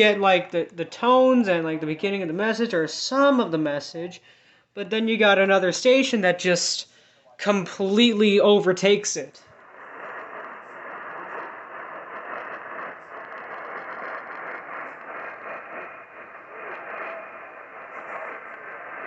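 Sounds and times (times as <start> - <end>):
radio static hiss: 0.0 - 2.1, 8.7 - 19.0.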